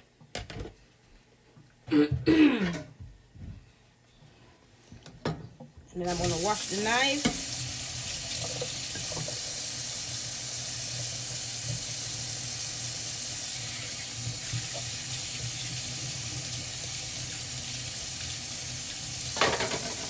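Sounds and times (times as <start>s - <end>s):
tap running into sink: 7.2s - 9.5s, 19.3s - 20.0s.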